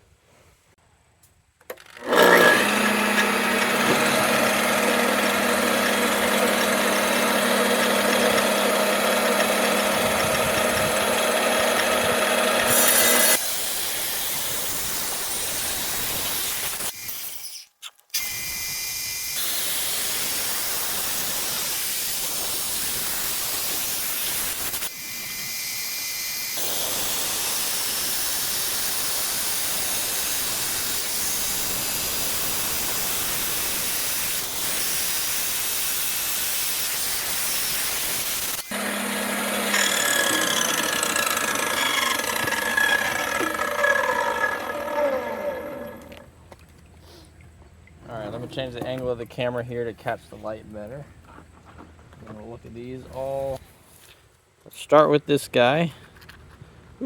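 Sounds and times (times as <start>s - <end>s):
rock saw motor hum: 1.7s - 13.4s, 38.5s - 46.4s
saw blade grinding stone: 2.0s - 13.4s, 16.5s - 18.4s, 38.6s - 46.3s.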